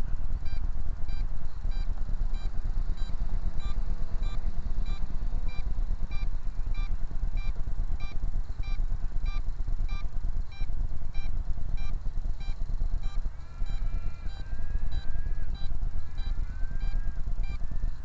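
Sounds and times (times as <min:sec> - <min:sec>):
loud rough low rumble: 0:00.0 - 0:18.0
radio transmitter beeping: 0:13.0 - 0:17.7.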